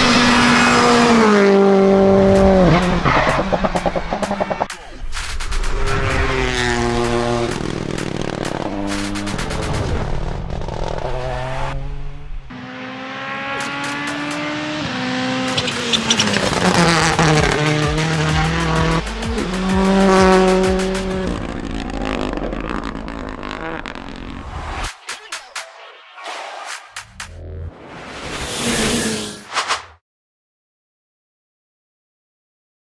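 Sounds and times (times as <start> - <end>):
rally car engines revving: 0.0 - 24.9.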